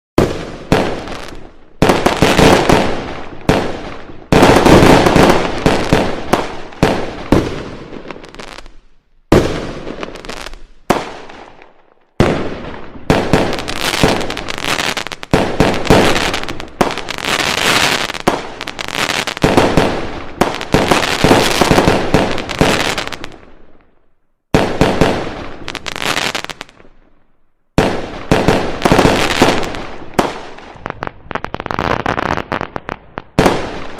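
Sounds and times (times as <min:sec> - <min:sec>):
firecrackers cracking and banging: 0:00.2 - 0:08.7, 0:12.2 - 0:23.4.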